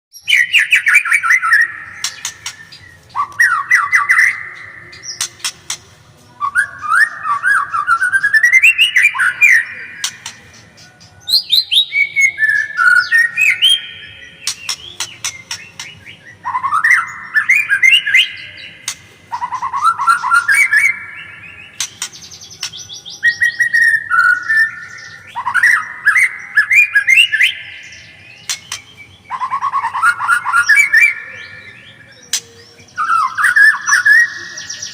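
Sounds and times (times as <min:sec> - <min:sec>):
bird singing whistled notes: 0:00.2 - 0:34.9
sharp bird clicks: 0:00.5 - 0:05.9, 0:14.4 - 0:16.2, 0:21.7 - 0:23.0, 0:28.4 - 0:29.0.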